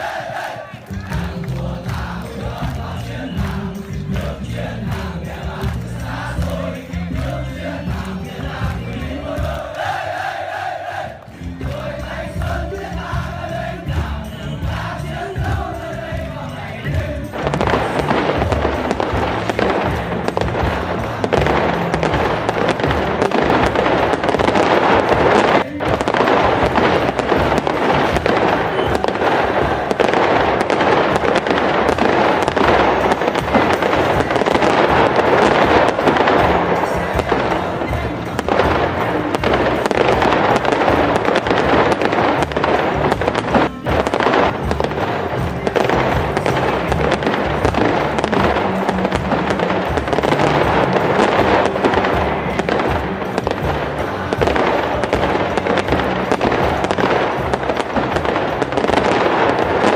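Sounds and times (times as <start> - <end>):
background music: 0.0 - 59.9
fireworks bursting and crackling: 0.0 - 59.9.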